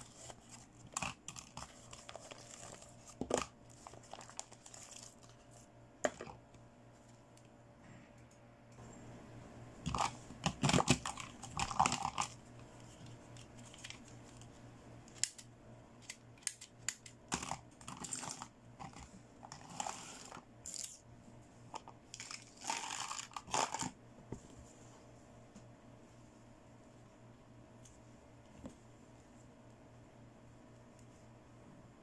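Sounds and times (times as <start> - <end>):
packaging crinkling: 0.0 - 5.6.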